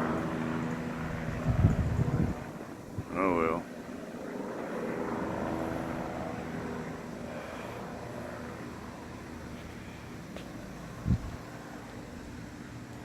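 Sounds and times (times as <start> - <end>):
helicopter engine and rotor drone: 0.0 - 13.0.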